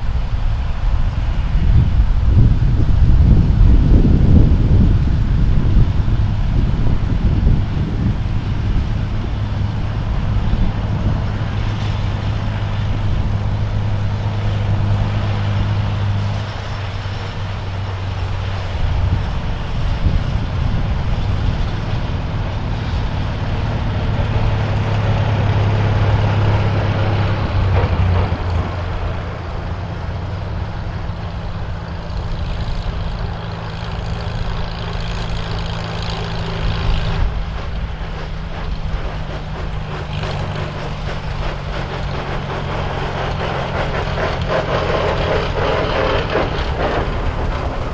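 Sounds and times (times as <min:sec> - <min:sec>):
tractor engine running: 0:00.0 - 0:47.9.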